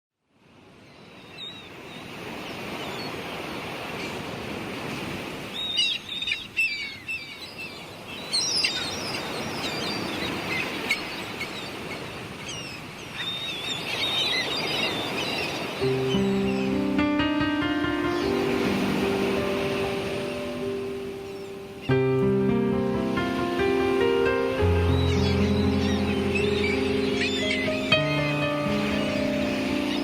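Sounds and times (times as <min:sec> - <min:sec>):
sea noise: 0:00.3 - 0:30.0.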